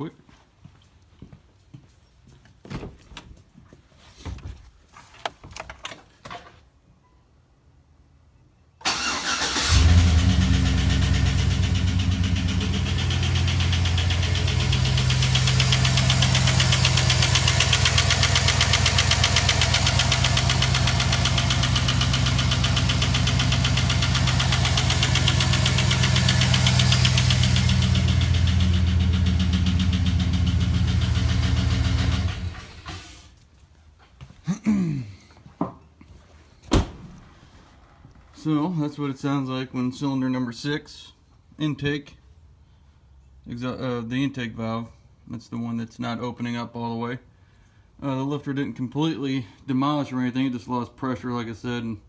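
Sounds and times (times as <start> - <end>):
engine idling with fast ticking: 9.7 - 32.9.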